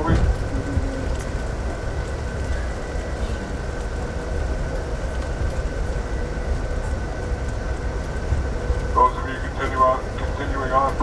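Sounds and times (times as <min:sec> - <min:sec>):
train rumbling: 0:00.0 - 0:11.0.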